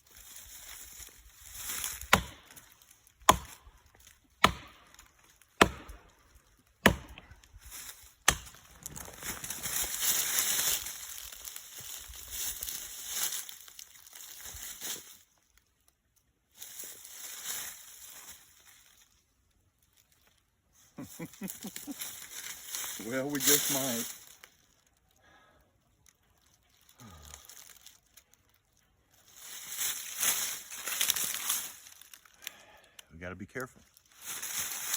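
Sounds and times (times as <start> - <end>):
axe chopping tree trunk: 2.0 - 3.7, 4.4 - 6.2, 6.8 - 7.4, 8.2 - 8.7.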